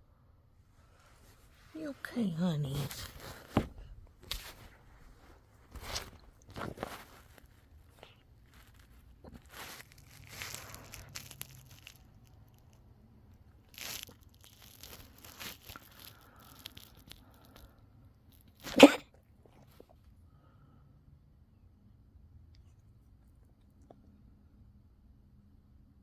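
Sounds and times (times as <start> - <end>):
pet coughing: 18.6 - 19.2.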